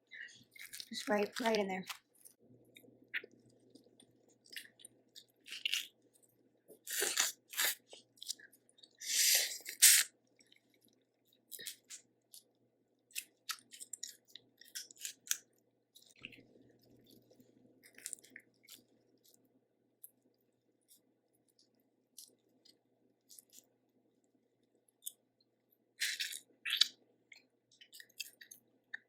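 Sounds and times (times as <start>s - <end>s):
person chewing with mouth smacks: 2.7s - 20.3s, 26.0s - 29.0s.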